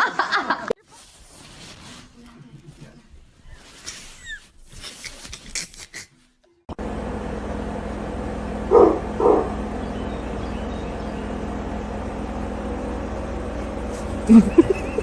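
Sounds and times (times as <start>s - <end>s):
steady low hum: 6.7s - 15.0s
dog barking: 8.4s - 11.8s
dog yelping: 8.7s - 10.3s.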